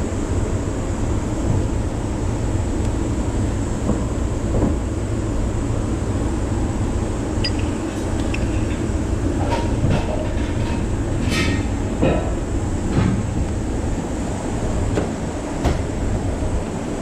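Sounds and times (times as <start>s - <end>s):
metallic clinks of tools: 7.4s - 8.4s.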